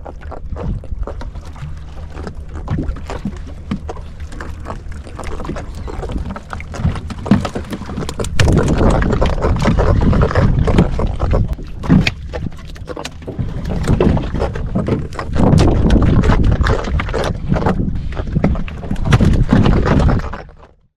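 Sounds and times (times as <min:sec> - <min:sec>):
boat engine running: 0:00.0 - 0:20.9
sharp knocks and thuds: 0:05.2 - 0:17.8.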